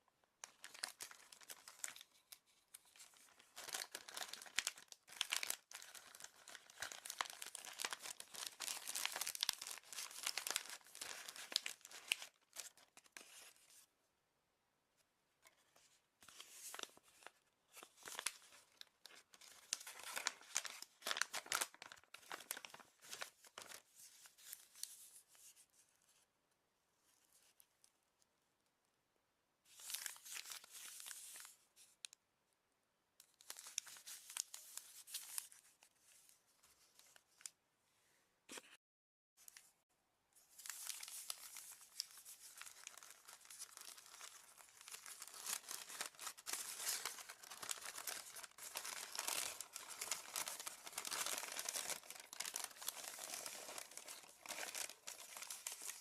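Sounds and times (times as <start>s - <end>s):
paper packaging crinkling and tearing: 0.4s - 13.8s, 16.2s - 25.1s, 29.7s - 31.6s, 33.4s - 35.8s, 40.5s - 56.0s.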